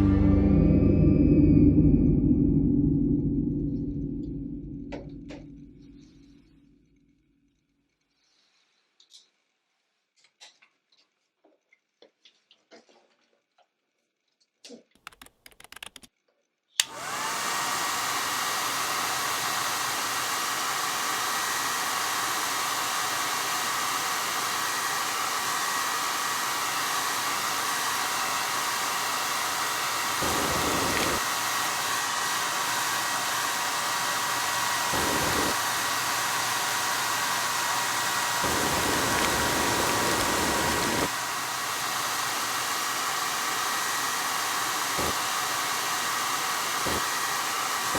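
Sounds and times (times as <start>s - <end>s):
hair dryer motor whine: 0.0s - 6.5s, 16.8s - 47.9s
hair dryer switch clicks: 16.8s - 17.3s, 37.6s - 41.1s.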